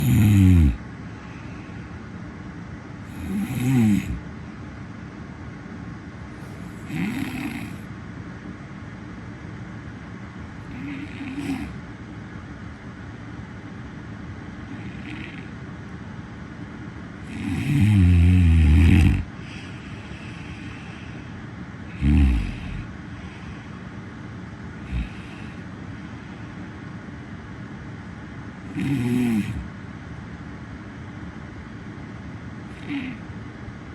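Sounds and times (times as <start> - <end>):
person snoring: 0.0 - 1.8, 3.1 - 4.2, 6.5 - 7.9, 10.6 - 11.8, 14.7 - 15.5, 17.2 - 21.3, 21.9 - 23.8, 24.8 - 25.7, 28.6 - 29.7, 32.7 - 33.2
steady background hiss: 0.0 - 33.9.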